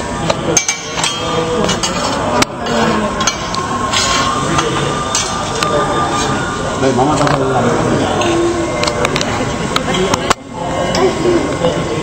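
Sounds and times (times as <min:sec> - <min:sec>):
metal utensils clanking: 0:00.5 - 0:06.4.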